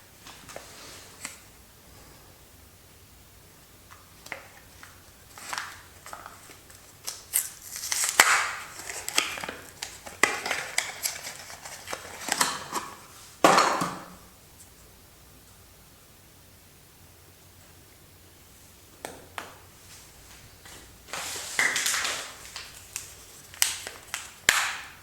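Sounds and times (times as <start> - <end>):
paper and cardboard crinkling: 4.3 - 13.4, 20.0 - 24.9.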